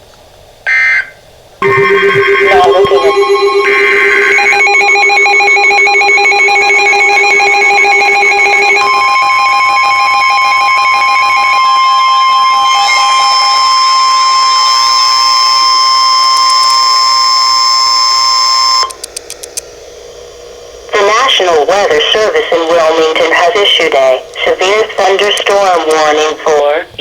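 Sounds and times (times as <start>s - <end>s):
steady warning tone: 0.6s - 27.0s
ringing electronic alert: 0.7s - 16.3s
short clicks: 18.8s - 19.7s.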